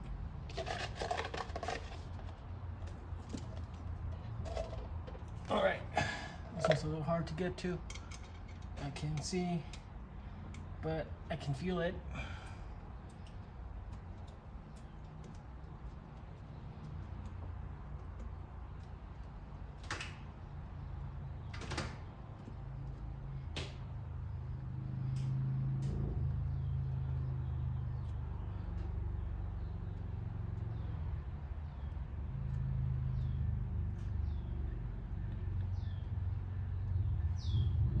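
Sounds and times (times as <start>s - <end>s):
metal tools scraping and clinking: 0.5s - 5.5s, 6.2s - 9.8s
steady low rumble: 33.2s - 38.0s.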